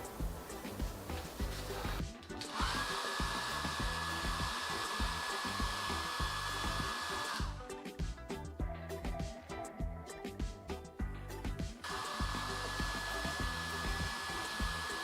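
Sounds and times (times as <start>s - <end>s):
hair dryer blowing with high whine: 0.0s - 7.6s, 11.8s - 15.0s.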